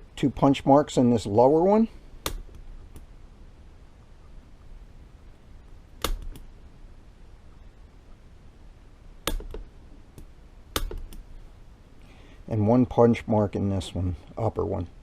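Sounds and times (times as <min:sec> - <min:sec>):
hammer striking metal punch: 0:09.3 - 0:09.7.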